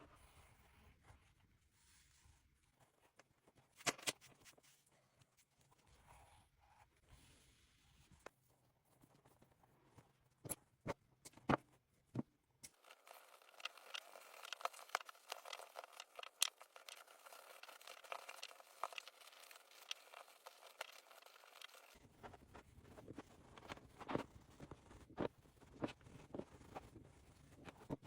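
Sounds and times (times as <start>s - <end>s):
leather crackling and scratching: 12.7s - 22.0s.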